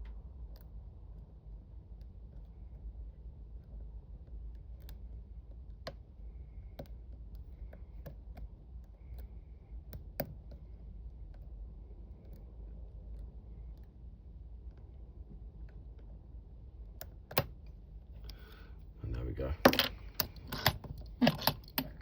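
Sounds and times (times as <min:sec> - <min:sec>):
low steady hum: 0:00.0 - 0:22.0
metallic clicks of lock picking: 0:19.6 - 0:22.0.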